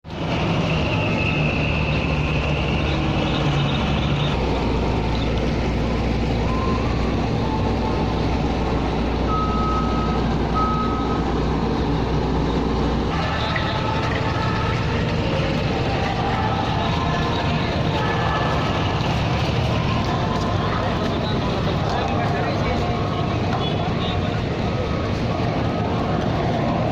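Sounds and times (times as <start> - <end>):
ship engine rumble: 0.0 - 26.9
short high beeps: 9.3 - 11.3.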